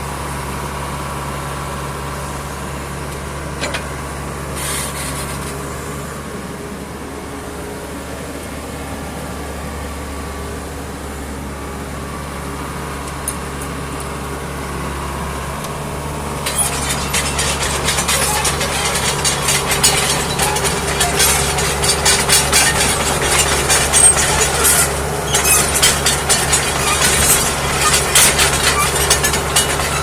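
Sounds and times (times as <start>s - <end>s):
excavator diesel engine idling: 0.0s - 30.0s
dense clattering and rattling: 16.4s - 30.0s.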